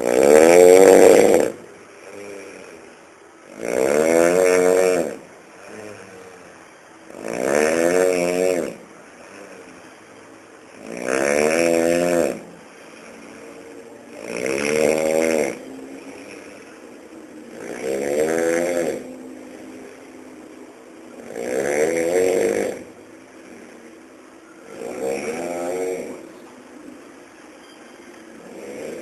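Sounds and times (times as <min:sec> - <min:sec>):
loud snoring: 0:00.0 - 0:26.4, 0:28.2 - 0:29.0
quiet breathing: 0:05.1 - 0:07.1, 0:11.4 - 0:29.0.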